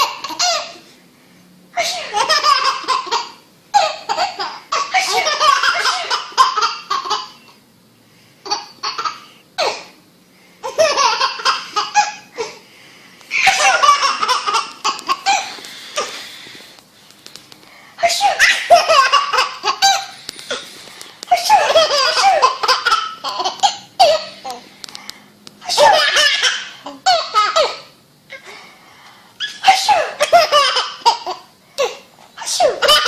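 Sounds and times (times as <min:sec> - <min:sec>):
baby belly laughing: 0:00.0 - 0:00.8, 0:01.8 - 0:07.6, 0:10.6 - 0:12.6, 0:13.3 - 0:16.1, 0:18.0 - 0:20.6, 0:21.3 - 0:24.6, 0:25.6 - 0:28.4, 0:29.4 - 0:33.0.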